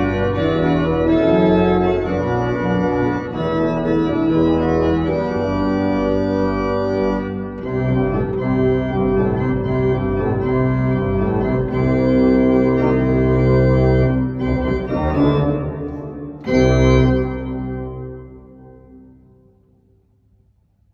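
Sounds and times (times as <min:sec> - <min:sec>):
church organ playing chords: 0:00.0 - 0:19.6.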